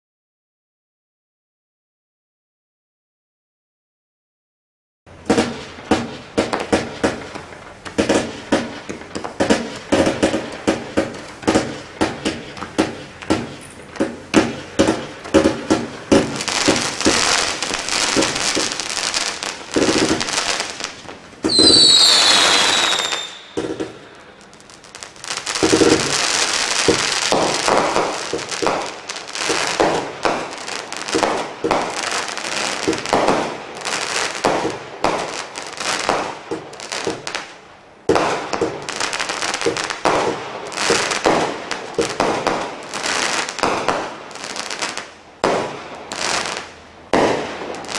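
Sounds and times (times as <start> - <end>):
firework launches and bursts: 5.2 - 47.9
firework whistles: 14.4 - 24.6.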